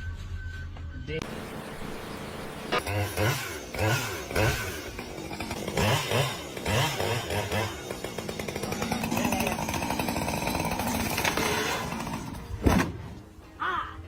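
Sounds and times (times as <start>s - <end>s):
small motor buzzing: 1.8s - 12.5s.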